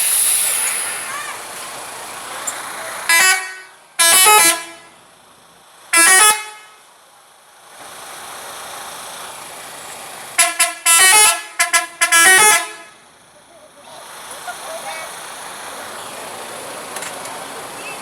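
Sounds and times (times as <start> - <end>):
multi-tone bus air horn: 2.9 - 5.1, 5.9 - 6.9, 10.4 - 13.2.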